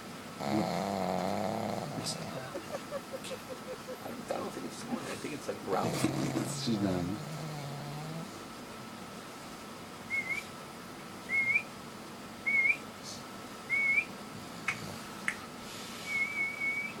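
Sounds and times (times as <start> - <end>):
dog nose whistling: 10.1 - 10.5, 11.3 - 11.7, 12.5 - 12.8, 13.7 - 14.1, 16.0 - 17.0.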